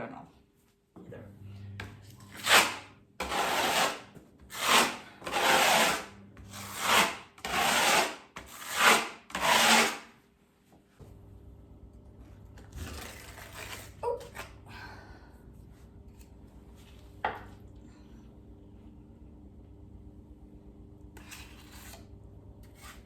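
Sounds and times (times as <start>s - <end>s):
plastering knife scraping wall: 2.1s - 10.2s, 21.2s - 23.0s.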